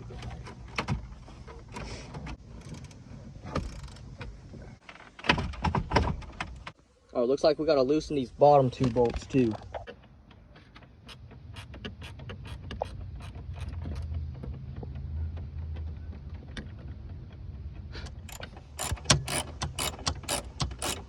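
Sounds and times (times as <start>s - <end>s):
ratchet wrench clicking: 18.3s - 21.0s.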